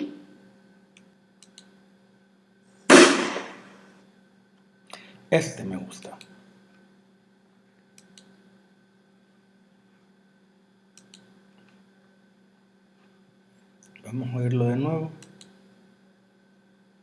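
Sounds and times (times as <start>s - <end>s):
faint electrical hum: 0.0s - 17.0s
faint clicks: 1.0s - 1.7s, 8.0s - 8.3s, 11.0s - 11.8s.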